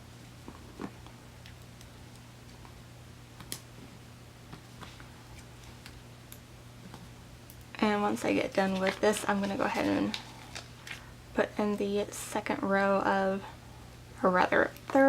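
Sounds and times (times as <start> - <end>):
steady low hum: 0.0 - 15.0
paper sticker sheets handled: 8.1 - 11.0.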